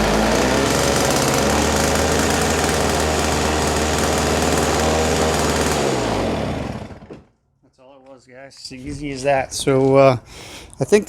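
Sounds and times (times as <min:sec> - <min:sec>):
snow thrower engine running: 0:00.0 - 0:07.2.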